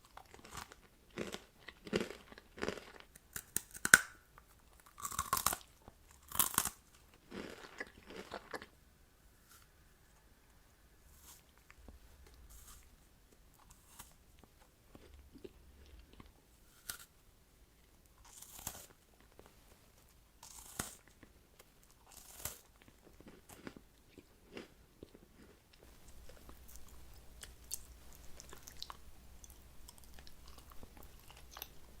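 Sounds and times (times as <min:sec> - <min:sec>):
chewing sticky candy: 0:00.0 - 0:08.8, 0:20.4 - 0:32.0
crunchy bites: 0:00.2 - 0:08.7, 0:14.9 - 0:17.1, 0:18.2 - 0:19.0, 0:20.4 - 0:21.2, 0:21.8 - 0:31.8.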